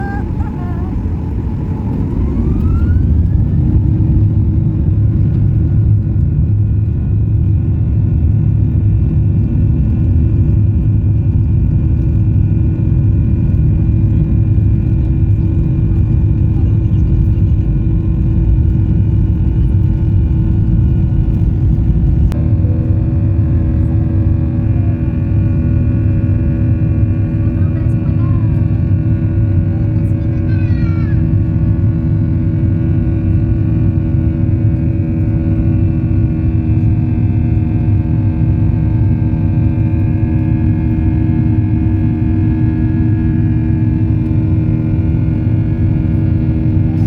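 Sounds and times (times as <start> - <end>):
jet engines spooling up: 0.0 - 5.6
runway rumble: 0.0 - 47.0.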